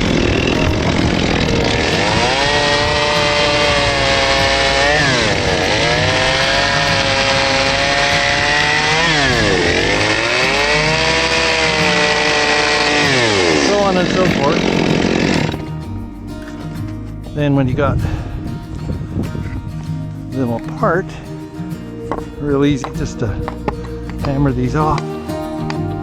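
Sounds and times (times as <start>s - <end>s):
power saw cutting wood: 0.0s - 15.7s.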